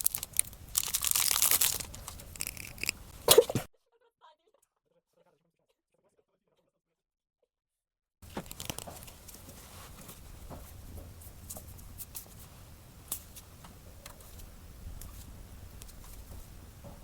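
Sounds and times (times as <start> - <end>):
wrapping tearing and crinkling: 0.0 - 3.4, 8.3 - 9.1
low steady hum: 0.0 - 3.7, 8.2 - 17.0.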